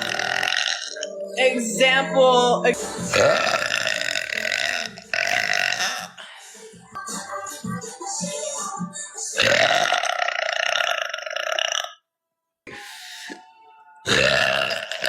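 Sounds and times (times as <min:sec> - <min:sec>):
woman belching loudly: 0:00.0 - 0:01.1, 0:03.1 - 0:06.2, 0:09.4 - 0:12.0, 0:14.1 - 0:15.0.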